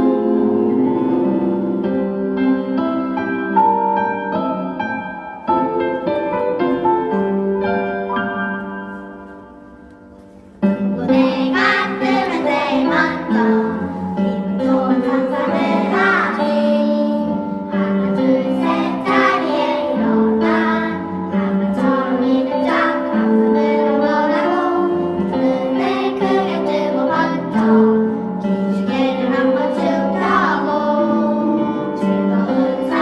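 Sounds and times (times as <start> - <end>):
instrumental accompaniment: 0.0 - 33.0
children singing: 10.8 - 33.0.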